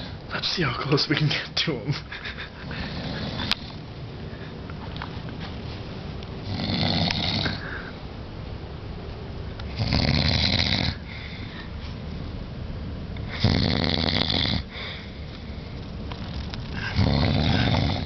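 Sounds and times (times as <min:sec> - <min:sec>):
man snoring: 0:02.8 - 0:03.8, 0:06.4 - 0:07.7, 0:09.7 - 0:11.0, 0:13.3 - 0:14.7, 0:16.8 - 0:18.0.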